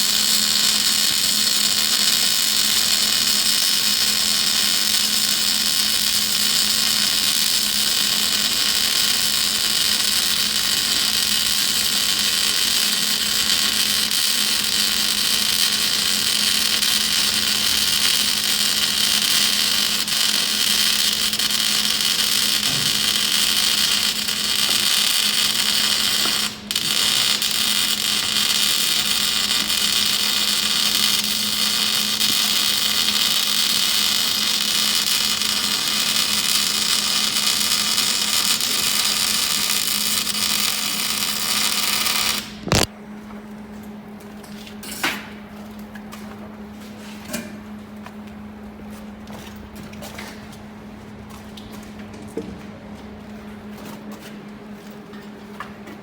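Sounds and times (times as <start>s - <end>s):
welding arc hissing: 0.0s - 42.9s.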